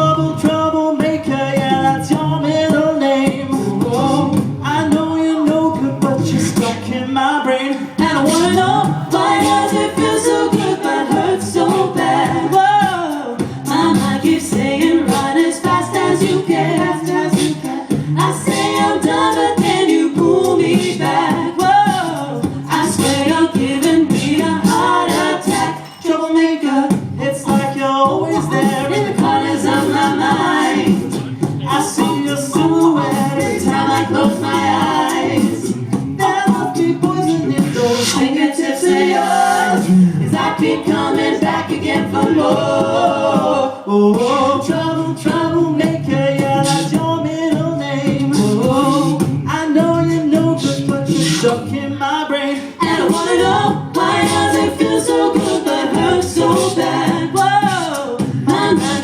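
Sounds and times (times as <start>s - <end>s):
a cappella group singing harmony: 0.0s - 59.0s.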